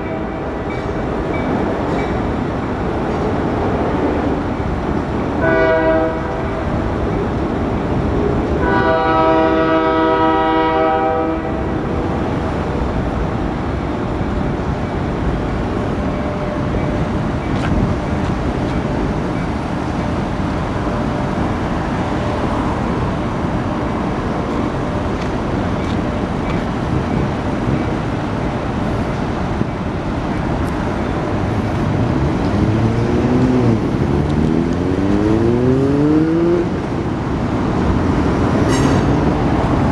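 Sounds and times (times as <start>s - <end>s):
freight train rumbling: 0.0s - 39.9s
locomotive air horn: 5.4s - 6.5s, 8.6s - 11.8s
vehicle engine accelerating: 31.8s - 36.8s.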